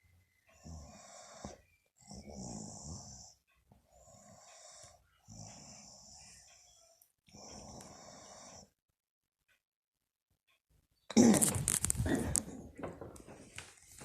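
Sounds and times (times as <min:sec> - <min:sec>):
woman snoring: 0:00.6 - 0:03.4, 0:04.0 - 0:06.5, 0:07.3 - 0:08.7.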